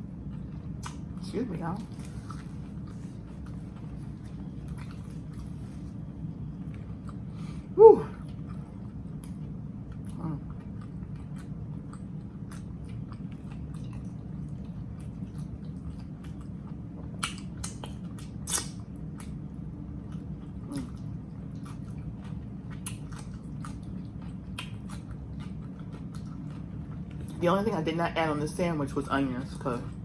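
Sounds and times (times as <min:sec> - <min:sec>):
steady low hum: 0:00.0 - 0:30.0
person chewing sandwich: 0:01.8 - 0:27.4.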